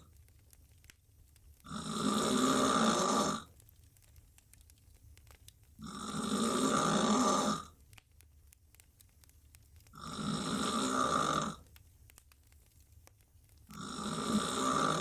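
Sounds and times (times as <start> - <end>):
woman snoring loudly: 1.7 - 3.4, 5.8 - 7.7, 10.0 - 11.6, 13.8 - 15.0.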